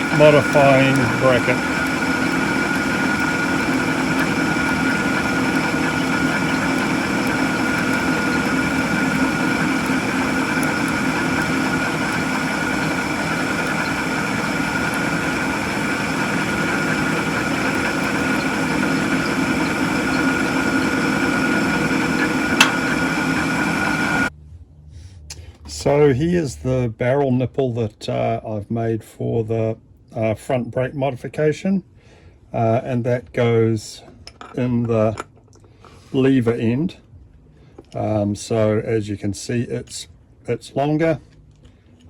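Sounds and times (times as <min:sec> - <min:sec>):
machine tool hum with high whine: 0:00.0 - 0:24.3.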